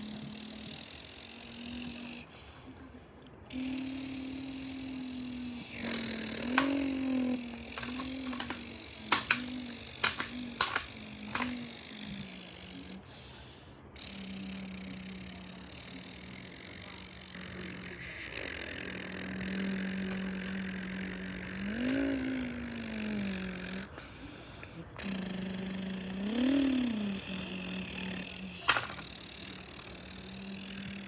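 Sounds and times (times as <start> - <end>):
person imitating car engine: 3.5 - 13.0, 14.0 - 24.0, 25.0 - 31.0.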